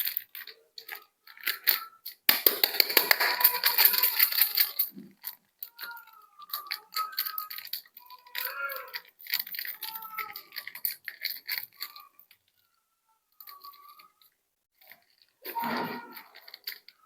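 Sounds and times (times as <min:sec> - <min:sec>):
wrapper tearing: 0:00.0 - 0:05.4, 0:06.4 - 0:12.3
plastic wrappers crinkling: 0:00.0 - 0:17.0.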